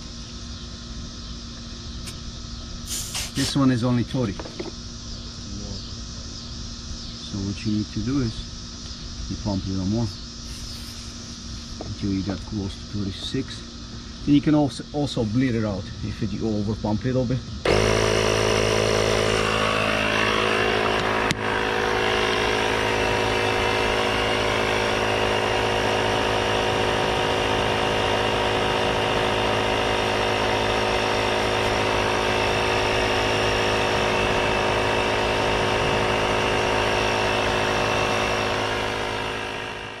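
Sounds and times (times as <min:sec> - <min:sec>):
electric tyre inflator running: 0:00.0 - 0:03.8, 0:08.8 - 0:12.3, 0:17.6 - 0:40.0.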